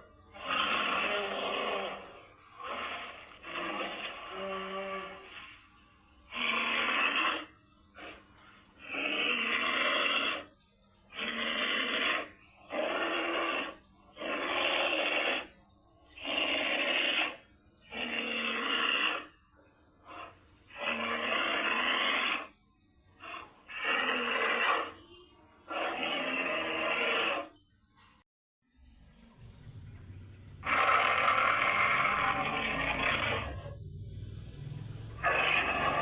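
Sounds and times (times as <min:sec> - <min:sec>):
creature growls: 0:00.0 - 0:05.6, 0:06.3 - 0:08.2, 0:08.8 - 0:10.5, 0:11.1 - 0:15.5, 0:16.1 - 0:19.4, 0:20.0 - 0:22.5, 0:23.2 - 0:25.0, 0:25.7 - 0:27.5, 0:30.6 - 0:34.2, 0:35.0 - 0:36.0.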